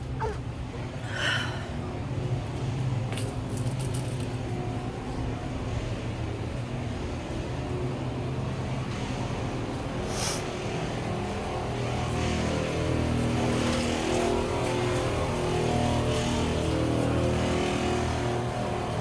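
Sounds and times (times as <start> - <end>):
low engine drone: 0.0 - 3.3, 4.6 - 19.0
short hiss: 10.1 - 10.4.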